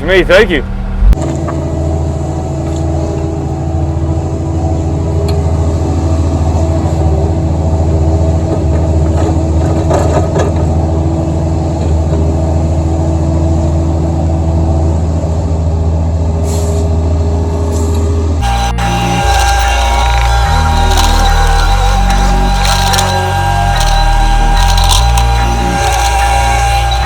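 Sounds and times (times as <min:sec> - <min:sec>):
excavator diesel engine running: 0:00.0 - 0:27.0.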